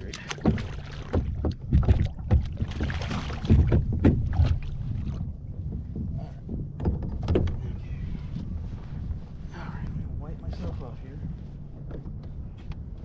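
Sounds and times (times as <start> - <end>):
water splashing: 0.0 - 5.4
steady low rumble: 0.0 - 13.0
knocks on kayak hull: 0.3 - 4.6.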